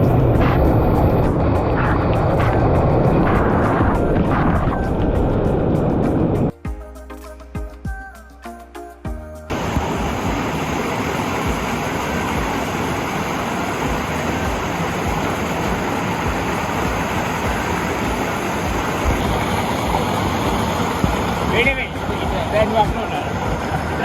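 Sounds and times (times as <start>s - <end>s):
wind buffeting microphone: 0.0s - 6.5s, 9.5s - 24.0s
waterfall rushing: 9.5s - 24.0s.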